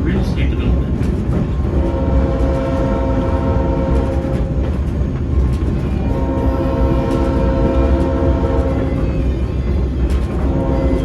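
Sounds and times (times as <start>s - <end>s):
train rumbling: 0.0s - 11.0s
locomotive horn blasts: 1.8s - 4.4s, 6.1s - 9.2s, 10.4s - 11.0s.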